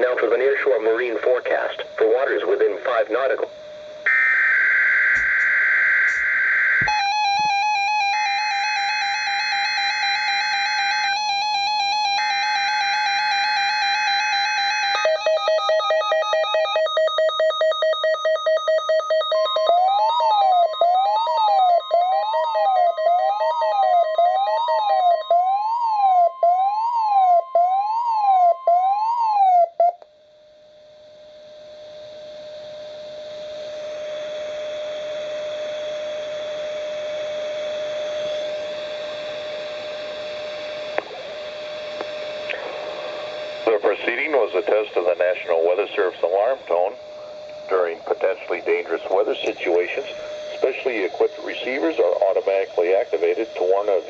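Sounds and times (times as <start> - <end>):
steady warning alarm tone: 0.0 - 54.0
rapid beeping: 41.4 - 54.0
screechy digital data bursts: 43.3 - 54.0.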